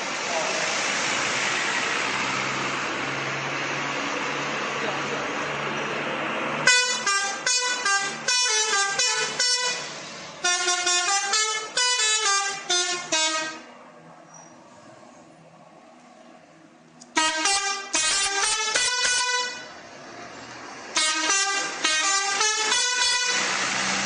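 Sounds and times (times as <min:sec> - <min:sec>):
multi-tone air horn jingle: 0:10.4 - 0:13.7.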